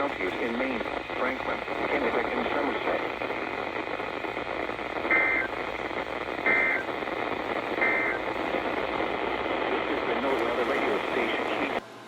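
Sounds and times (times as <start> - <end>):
radio static: 0.0 - 11.8
warbling two-tone data bursts: 5.0 - 5.6, 6.4 - 6.9, 7.8 - 8.3.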